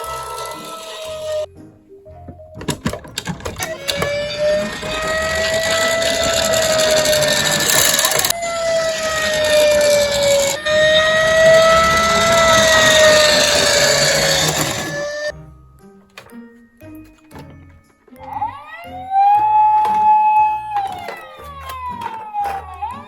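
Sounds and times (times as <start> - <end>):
clicks and rattles: 2.6 - 15.3, 19.8 - 23.0
continuous noisy rattle: 2.6 - 15.3
fire engine wail siren: 3.7 - 15.3, 18.5 - 23.0.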